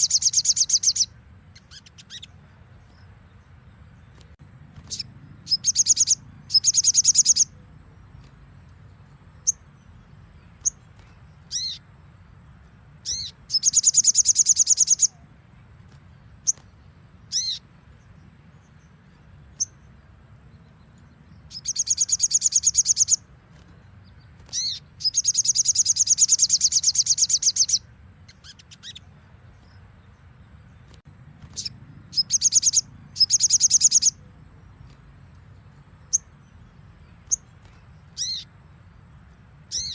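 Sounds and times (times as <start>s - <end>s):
songbird fast trilling: 0.0s - 2.3s, 4.8s - 7.6s, 11.4s - 11.8s, 13.0s - 15.2s, 17.3s - 17.6s, 21.5s - 23.2s, 24.4s - 29.1s, 31.4s - 34.3s, 38.1s - 38.5s, 39.7s - 39.9s.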